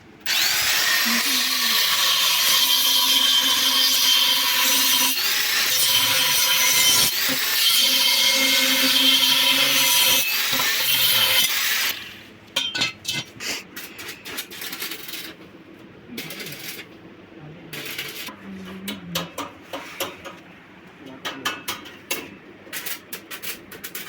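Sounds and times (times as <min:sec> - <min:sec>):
power tool running under load: 0:00.3 - 0:06.4.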